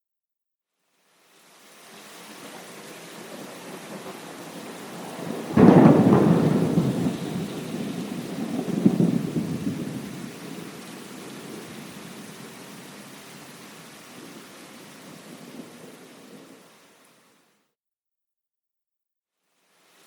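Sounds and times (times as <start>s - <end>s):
rain hissing: 0.9s - 17.6s, 19.4s - 20.0s
thunderclap rolling: 3.2s - 12.2s.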